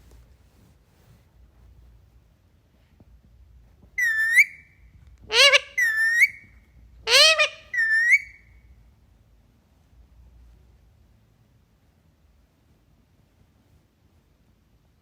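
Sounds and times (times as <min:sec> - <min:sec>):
parakeet whistled calls: 0:04.0 - 0:06.5, 0:07.1 - 0:08.5.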